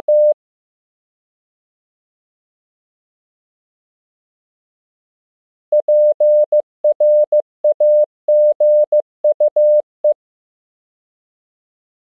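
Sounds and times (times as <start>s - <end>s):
morse code beeps: 0.1s - 0.4s, 5.8s - 10.2s.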